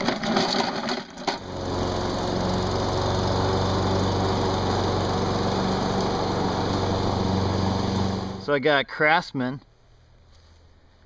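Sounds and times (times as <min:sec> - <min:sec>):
lawn mower engine running: 0:00.0 - 0:08.6
scuffling noise: 0:10.2 - 0:10.8.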